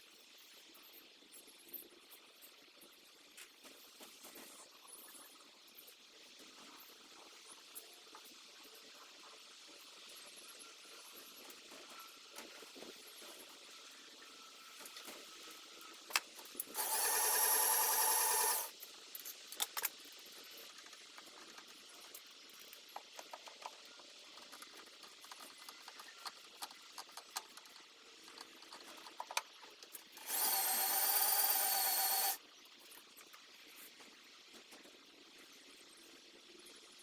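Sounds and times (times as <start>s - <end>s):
electric power tool whining: 16.8s - 18.7s, 30.2s - 32.4s.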